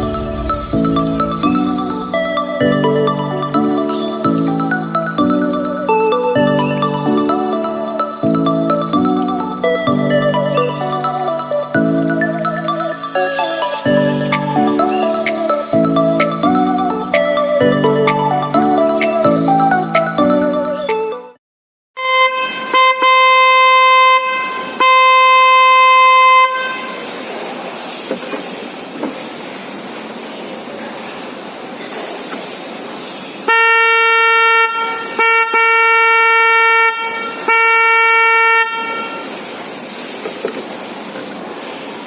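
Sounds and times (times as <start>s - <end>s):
steady rushing noise: 0.0s - 3.5s
car horn blasts: 22.0s - 27.2s, 33.5s - 39.4s.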